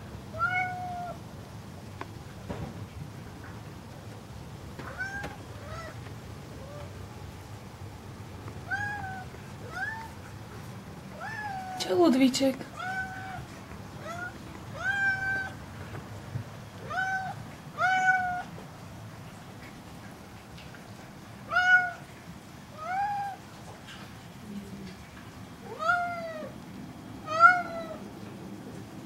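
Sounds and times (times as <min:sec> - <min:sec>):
cat meowing: 0:00.3 - 0:01.2, 0:04.8 - 0:06.0, 0:08.6 - 0:10.2, 0:11.1 - 0:11.8, 0:12.7 - 0:15.6, 0:16.8 - 0:18.5, 0:21.5 - 0:22.1, 0:25.7 - 0:26.6, 0:27.2 - 0:28.0.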